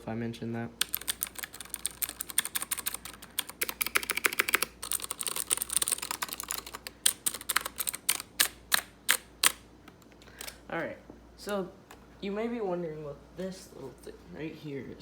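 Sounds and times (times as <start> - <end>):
mechanical keyboard typing clicks: 0.8 - 9.6.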